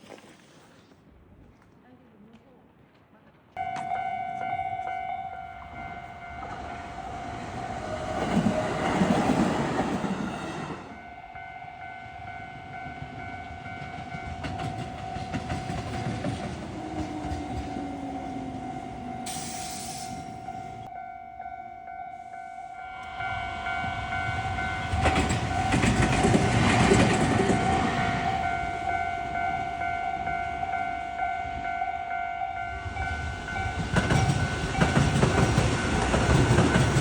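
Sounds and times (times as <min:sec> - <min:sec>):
level crossing alarm ringing: 0:03.6 - 0:09.9, 0:10.9 - 0:37.0
passing train rush: 0:03.6 - 0:37.0
train wheels clattering on rails: 0:05.5 - 0:11.0, 0:12.7 - 0:20.9, 0:23.0 - 0:28.5, 0:33.1 - 0:37.0.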